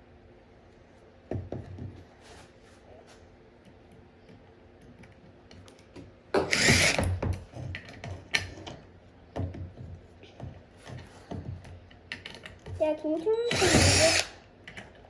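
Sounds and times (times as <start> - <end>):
tools knocking on wooden board: 6.4 - 12.8
cordless drill driving screw: 6.5 - 7.0, 13.5 - 14.4.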